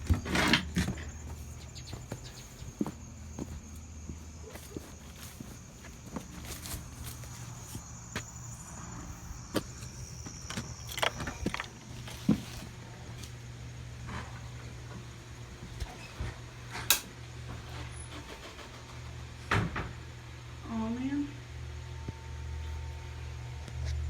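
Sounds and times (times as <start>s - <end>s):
steady low hum: 0.0s - 17.9s.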